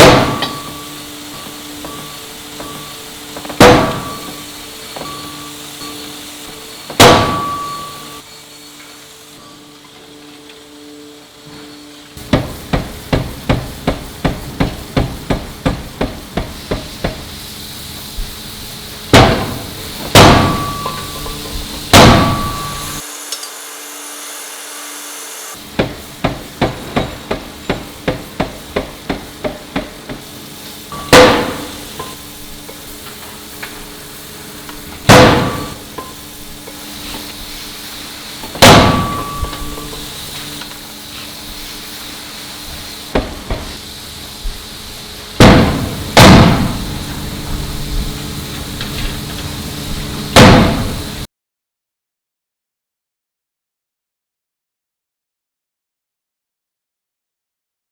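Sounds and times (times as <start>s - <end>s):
forging hammer striking metal: 0.0s - 8.3s, 12.2s - 18.3s, 19.1s - 23.6s, 25.6s - 42.0s, 42.8s - 43.8s, 45.4s - 47.2s, 50.4s - 51.2s.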